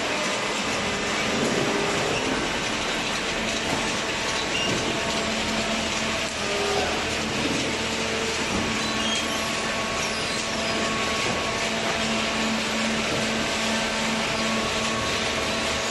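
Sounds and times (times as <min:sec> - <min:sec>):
cardboard baler running: 0:00.0 - 0:15.9.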